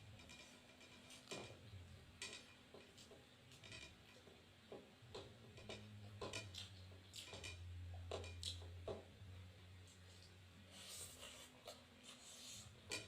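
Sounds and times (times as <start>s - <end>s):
low steady hum: 0.0s - 13.0s
chewing and eating sounds: 5.7s - 9.0s, 9.8s - 13.0s.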